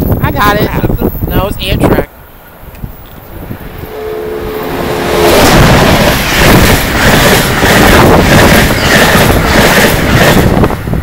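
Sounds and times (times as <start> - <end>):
train passing at speed: 2.0 - 11.0
train horn two notes: 3.8 - 5.9.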